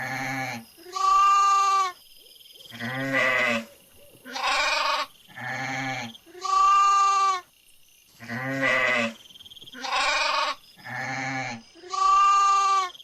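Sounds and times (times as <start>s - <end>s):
goat bleating: 0.0s - 1.9s, 2.8s - 3.6s, 4.3s - 7.4s, 8.2s - 9.2s, 9.8s - 12.9s.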